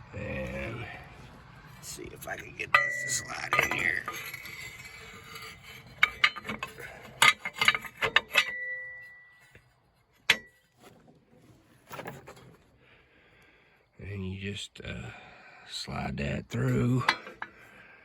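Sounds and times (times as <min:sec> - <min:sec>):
metal parts clinking and clanking: 0:01.6 - 0:12.7, 0:16.6 - 0:17.7
ringing metal strike: 0:02.7 - 0:04.1.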